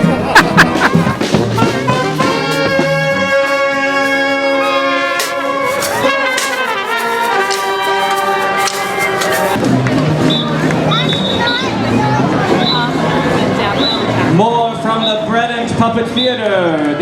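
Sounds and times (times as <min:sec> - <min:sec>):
brass band playing held chords: 0:00.0 - 0:12.0.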